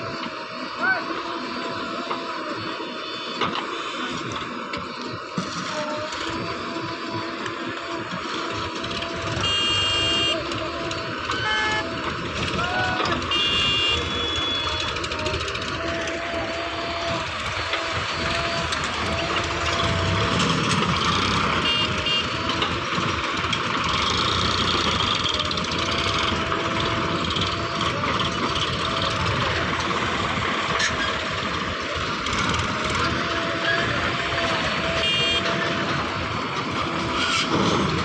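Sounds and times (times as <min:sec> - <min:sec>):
engine running steadily: 0:00.0 - 0:38.0
reversing alarm beeping: 0:05.4 - 0:37.9.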